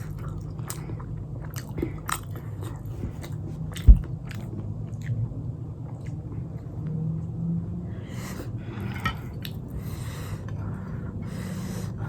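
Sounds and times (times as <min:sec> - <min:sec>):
wet chewing: 0:00.0 - 0:05.2
steady low hum: 0:00.0 - 0:12.0.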